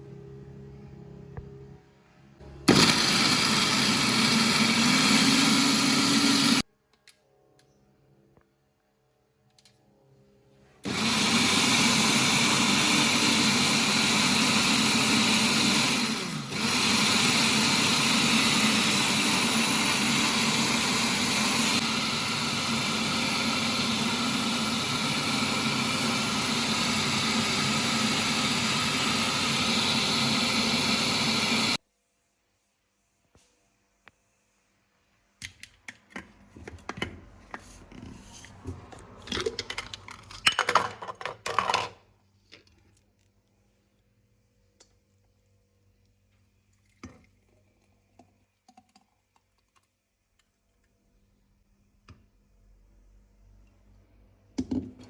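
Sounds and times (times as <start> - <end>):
electric blender running: 2.7 - 6.6, 10.8 - 31.8.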